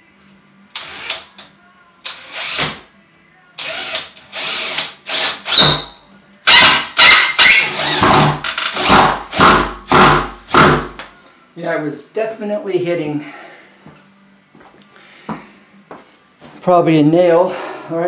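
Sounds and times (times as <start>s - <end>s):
power drill driving a screw: 0.7s - 1.3s, 2.0s - 2.8s, 3.6s - 10.2s.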